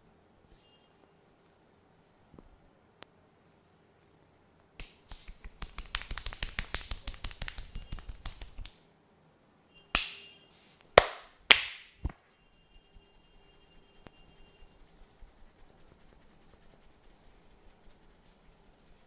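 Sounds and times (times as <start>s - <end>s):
rapid hand tapping: 4.8s - 8.7s
sharp hand smacks: 4.8s - 8.8s, 10.0s - 10.2s, 11.0s - 12.2s.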